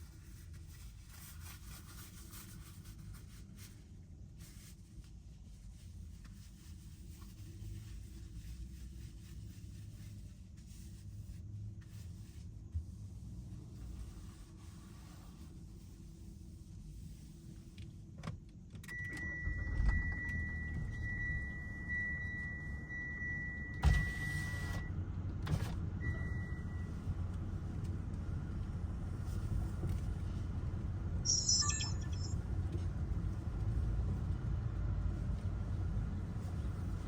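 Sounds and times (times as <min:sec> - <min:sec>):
brief high chirp: 0:31.3 - 0:32.4
steady high chime tone: 0:31.3 - 0:32.4.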